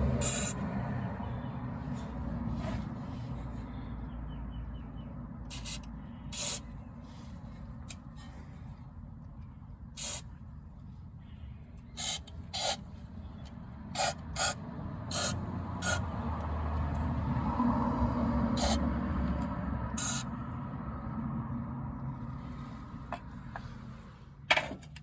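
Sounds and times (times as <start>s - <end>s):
hissing spray bursts: 0.2s - 0.6s, 5.5s - 6.6s, 10.0s - 10.2s, 12.0s - 12.8s, 18.6s - 18.8s, 20.0s - 20.3s.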